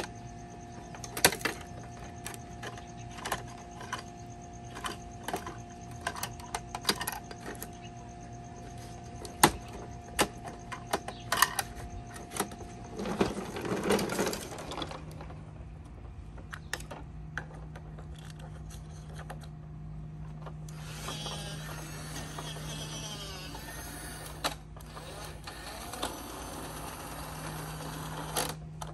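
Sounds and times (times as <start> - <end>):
steady low hum: 0.0 - 28.9
toy bin rattling clatter: 0.6 - 8.0, 9.2 - 15.5
whirring: 20.7 - 28.9.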